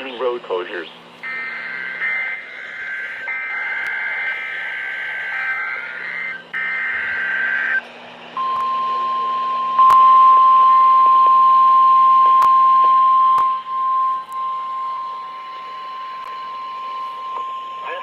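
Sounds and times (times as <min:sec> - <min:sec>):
steady high attention tone: 0:00.0 - 0:18.0
warbling digital data tones: 0:00.7 - 0:07.8.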